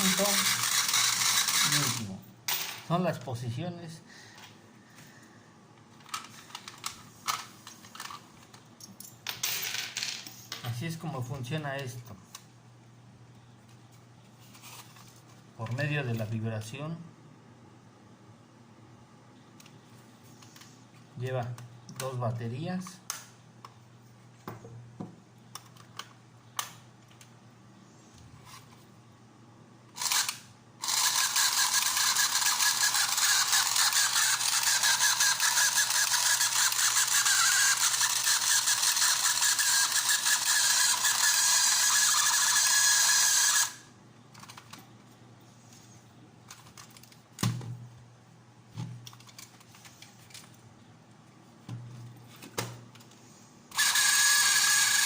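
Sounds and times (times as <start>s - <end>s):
toy track buzzing and rattling: 0.0s - 2.7s, 30.0s - 44.7s, 53.7s - 55.0s.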